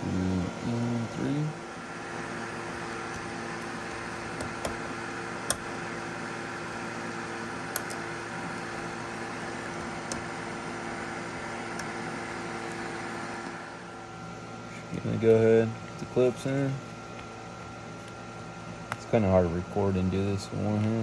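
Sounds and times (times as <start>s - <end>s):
fan-like hum: 0.0s - 21.0s
plastic clips clicking: 2.8s - 5.8s, 7.7s - 10.4s.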